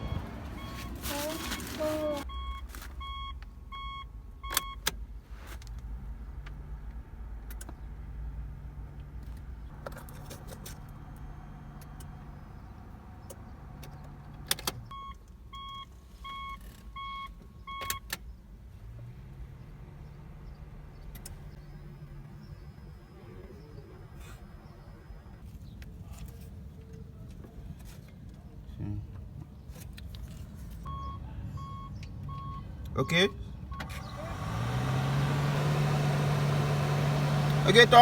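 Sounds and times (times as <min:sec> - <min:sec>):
vehicle warning chime beeping: 0:00.0 - 0:04.9, 0:14.9 - 0:18.1, 0:30.8 - 0:34.1.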